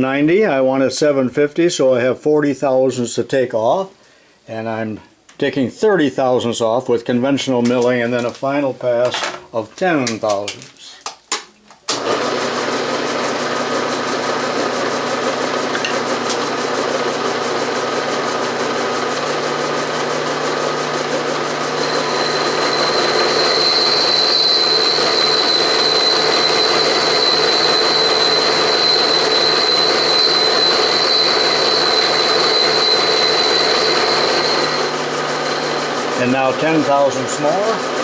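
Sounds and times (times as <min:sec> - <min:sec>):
milling machine cutting steel: 0:12.0 - 0:38.0
high whine: 0:21.7 - 0:37.5.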